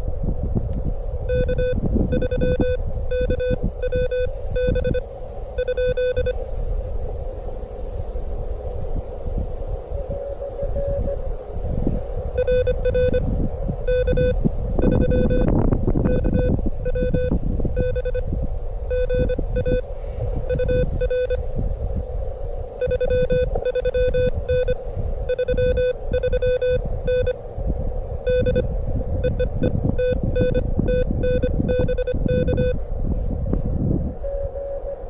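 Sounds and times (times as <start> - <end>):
wind buffeting microphone: 0.0 - 35.0
morse code beeping: 1.3 - 5.0, 5.6 - 6.4, 12.4 - 13.3, 13.9 - 18.3, 18.9 - 19.8, 20.5 - 21.4, 22.8 - 27.4, 28.2 - 32.8.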